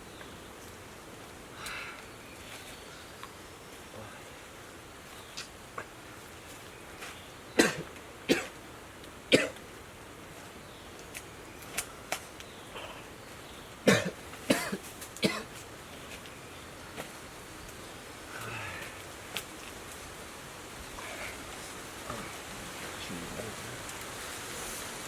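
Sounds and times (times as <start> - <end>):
man coughing: 13.9 - 15.5.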